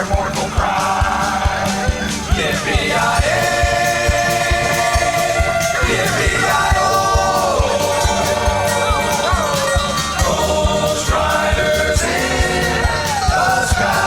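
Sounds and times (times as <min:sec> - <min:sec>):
country-western song: 0:00.0 - 0:14.0
drum beat: 0:00.0 - 0:14.0
person singing long notes: 0:00.0 - 0:14.0.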